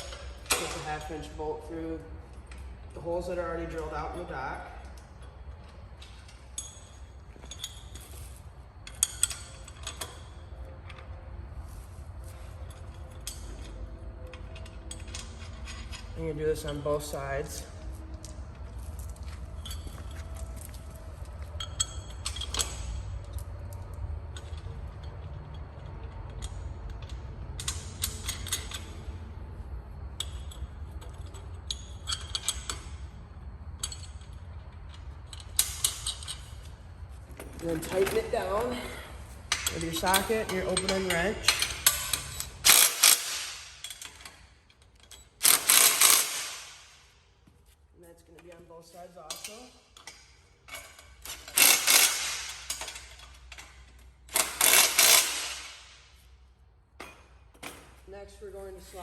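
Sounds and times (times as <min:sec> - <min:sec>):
metal hardware clinking: 0:03.6 - 0:11.1, 0:37.4 - 0:47.0
metal bolt clinking and tapping: 0:04.8 - 0:08.2, 0:08.8 - 0:11.1, 0:12.6 - 0:17.1, 0:21.5 - 0:29.0, 0:30.2 - 0:33.0, 0:33.8 - 0:36.7, 0:49.2 - 0:55.7.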